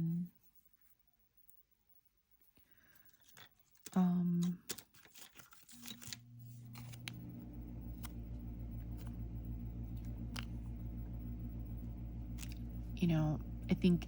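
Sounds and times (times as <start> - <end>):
packets clicking and rustling: 3.0 - 7.3
low motor hum: 5.8 - 14.0.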